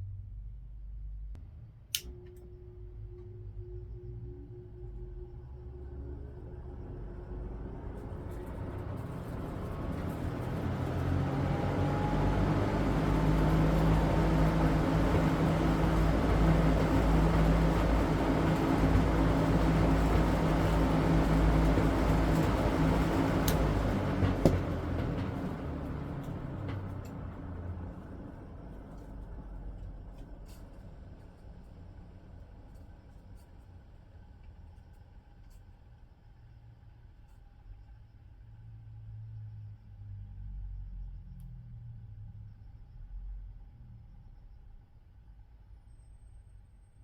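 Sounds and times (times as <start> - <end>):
exhaust fan humming: 1.8 - 34.4
sharp click: 1.9 - 2.4.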